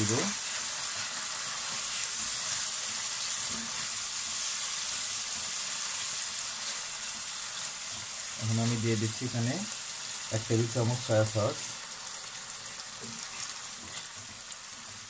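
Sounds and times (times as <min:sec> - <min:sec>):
vegetables sizzling in a pan: 0:00.0 - 0:15.0.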